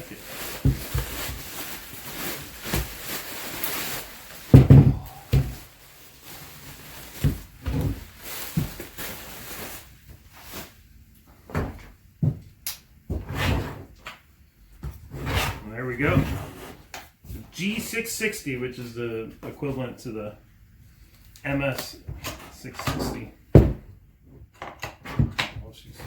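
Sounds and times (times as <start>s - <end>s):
packaging rustling: 0.0s - 10.8s
knocks and thumps: 4.5s - 5.7s, 22.8s - 24.0s.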